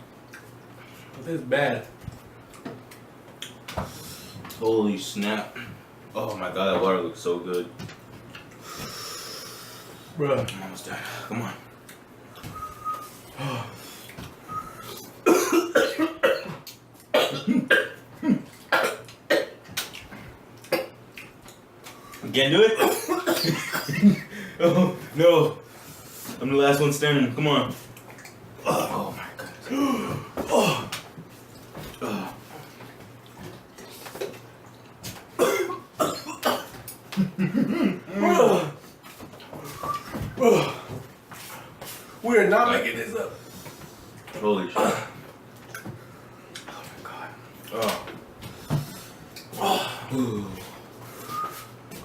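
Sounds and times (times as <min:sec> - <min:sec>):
man coughing harshly: 0:15.2 - 0:19.6, 0:22.8 - 0:25.0, 0:35.4 - 0:38.8, 0:44.7 - 0:45.2.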